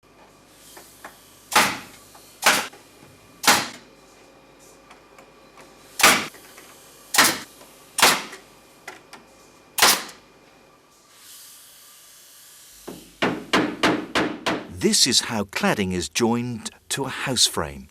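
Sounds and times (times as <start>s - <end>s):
hammer driving nails: 1.5s - 2.7s, 3.4s - 3.8s, 6.0s - 6.3s, 7.2s - 7.4s, 8.0s - 8.4s, 9.8s - 10.2s.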